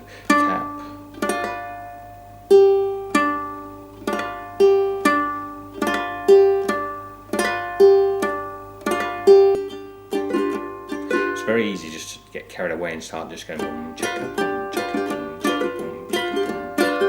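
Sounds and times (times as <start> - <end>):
ukulele played clawhammer style: 0.0 - 17.0.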